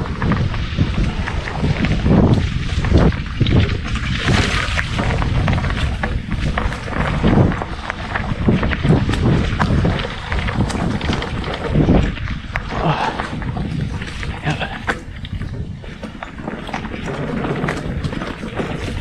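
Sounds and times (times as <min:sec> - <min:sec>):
bike knocking and rattling: 0:00.0 - 0:19.0
tyre rumble: 0:00.0 - 0:19.0
wind buffeting microphone: 0:00.0 - 0:19.0.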